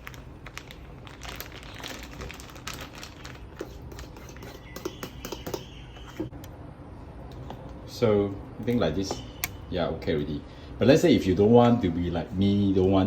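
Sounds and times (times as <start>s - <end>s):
flour stirred into batter: 3.4s - 5.6s.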